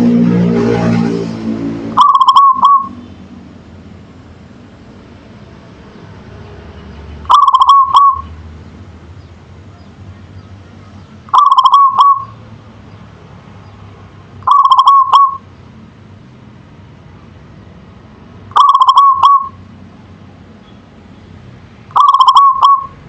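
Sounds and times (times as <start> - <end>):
dove cooing: 2.0 - 3.0, 7.3 - 8.3, 11.3 - 12.4, 14.4 - 15.4, 18.5 - 19.6, 21.9 - 23.0.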